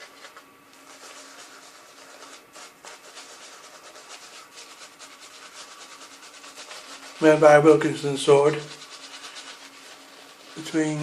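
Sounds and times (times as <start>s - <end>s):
shaving brush rubbing lather: 0.0s - 11.0s.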